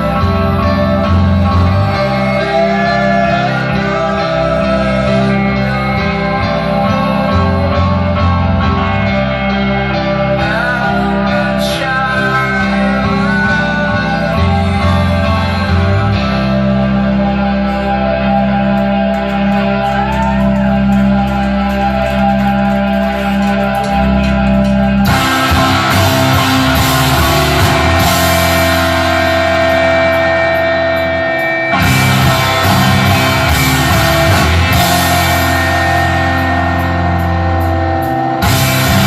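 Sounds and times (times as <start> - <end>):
bass guitar notes: 0.0 - 39.0
electric guitar: 0.0 - 39.0
drum kit playing: 19.8 - 39.0.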